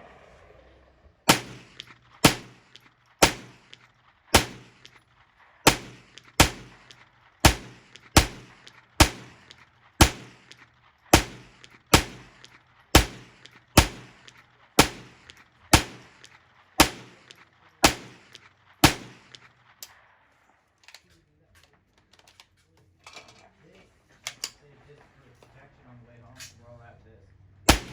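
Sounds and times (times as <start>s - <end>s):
rifle shots: 1.3s - 20.2s, 27.7s - 27.9s.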